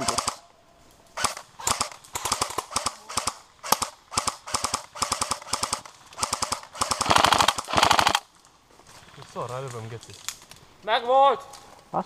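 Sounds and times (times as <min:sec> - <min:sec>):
airsoft rifle firing bursts: 0:00.0 - 0:00.4, 0:01.2 - 0:08.3.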